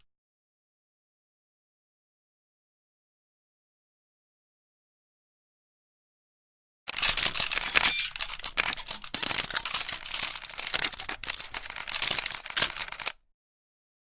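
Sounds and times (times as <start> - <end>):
camera shutters clicking rapidly: 6.9 - 13.2.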